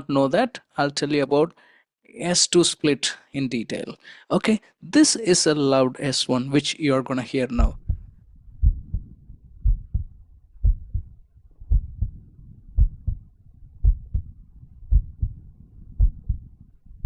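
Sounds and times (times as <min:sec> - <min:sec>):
heartbeat: 0:07.6 - 0:17.0.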